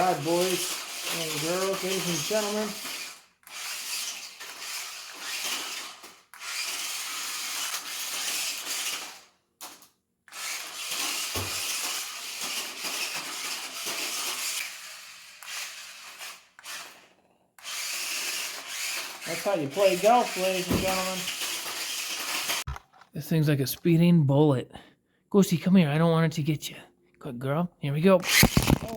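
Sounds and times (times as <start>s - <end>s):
rubber tyres scrubbing on ground: 0.0s - 2.8s
toy car electric motors whirring: 0.0s - 22.8s, 28.2s - 28.9s.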